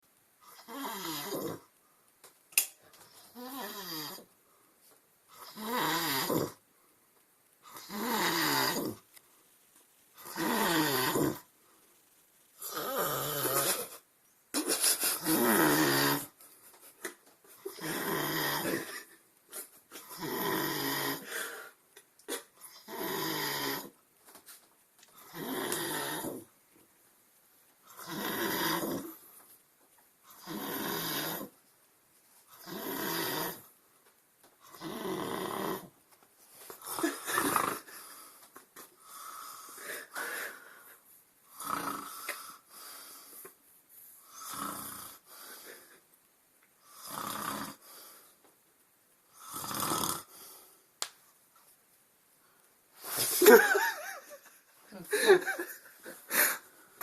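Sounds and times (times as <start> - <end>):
man snoring: 0.5 - 1.7, 3.4 - 4.3, 5.4 - 6.6, 7.7 - 9.0, 10.2 - 11.5, 12.6 - 13.9, 15.2 - 16.4, 17.7 - 19.1, 20.0 - 21.8, 22.7 - 24.0, 25.2 - 26.5, 27.9 - 29.2, 30.4 - 31.6, 32.6 - 33.7, 34.7 - 35.9, 36.8 - 38.1, 41.5 - 42.6, 44.3 - 45.8, 46.9 - 48.0, 49.3 - 50.4.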